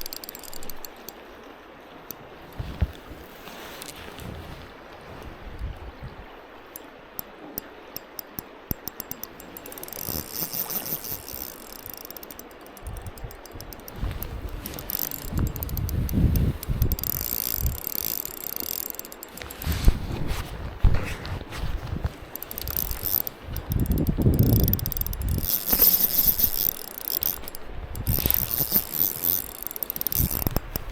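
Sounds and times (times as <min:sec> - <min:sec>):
fishing reel ratcheting: 0:00.0 - 0:01.2, 0:06.7 - 0:20.4, 0:22.1 - 0:30.9
reel drag buzzing: 0:00.0 - 0:04.3, 0:06.5 - 0:30.9.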